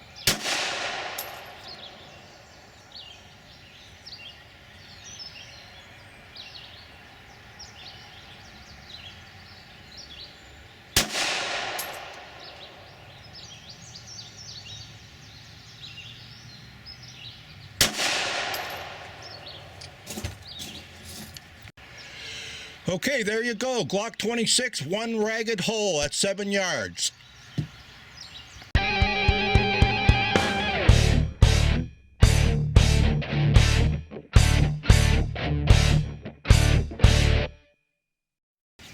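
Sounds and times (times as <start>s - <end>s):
pistol shots with echo: 0.2s - 2.4s, 10.9s - 13.2s, 17.8s - 19.8s.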